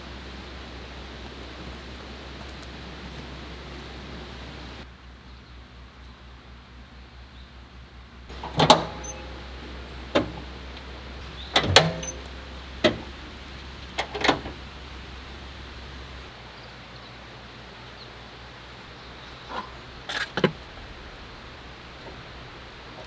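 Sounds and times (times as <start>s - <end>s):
steady low hum: 0.0s - 4.9s, 7.0s - 23.0s
sharp knocks and clanks: 8.3s - 16.2s.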